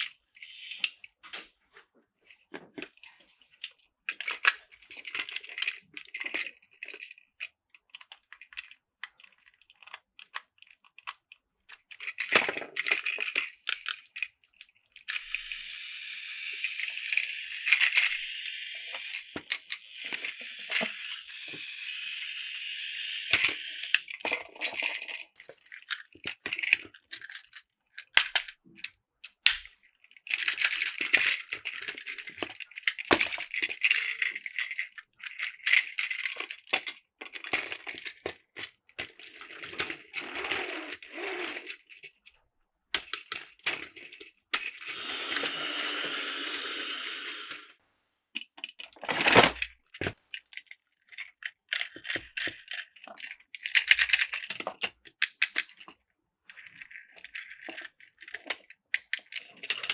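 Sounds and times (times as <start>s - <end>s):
toy train motor whirring: 0.0s - 1.1s, 11.9s - 28.5s, 30.3s - 38.3s, 39.0s - 42.2s, 43.0s - 47.8s, 51.3s - 55.9s, 56.5s - 59.9s
plastic toy trains clicking: 0.0s - 1.2s, 2.7s - 42.3s, 43.0s - 47.8s, 48.4s - 59.9s.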